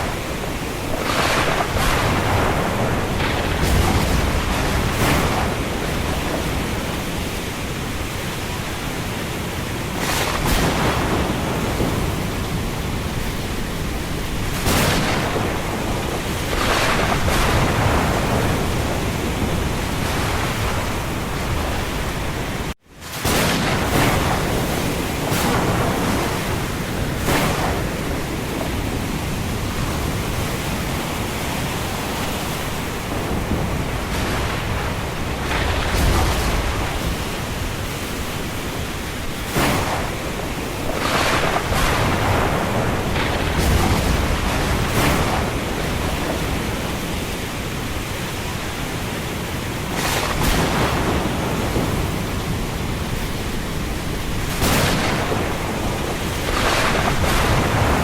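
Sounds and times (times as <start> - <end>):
rain and wind rushing: 0.0 - 58.0
thunder cracks: 0.0 - 58.0.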